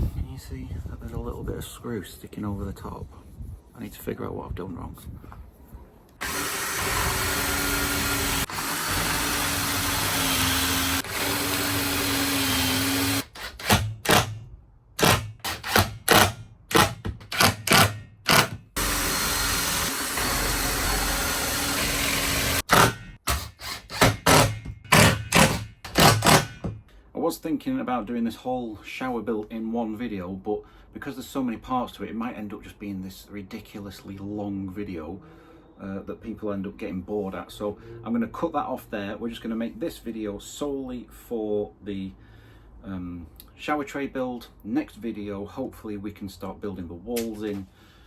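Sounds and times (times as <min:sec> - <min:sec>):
power drill running: 0:06.2 - 0:14.3, 0:15.0 - 0:26.5.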